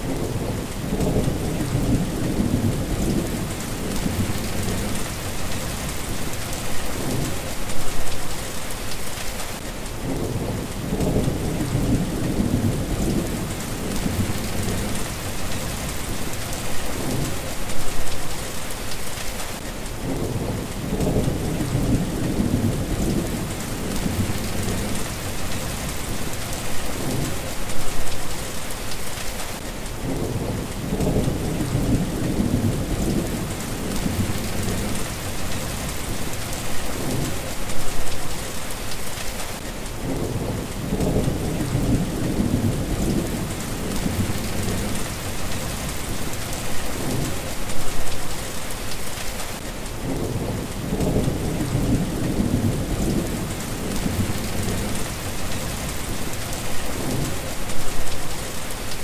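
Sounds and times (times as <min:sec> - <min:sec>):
rain hissing: 0:00.0 - 0:59.0
rolling thunder: 0:00.1 - 0:07.4, 0:10.0 - 0:17.5, 0:20.0 - 0:26.4, 0:30.0 - 0:37.4, 0:40.0 - 0:47.5, 0:50.0 - 0:57.5.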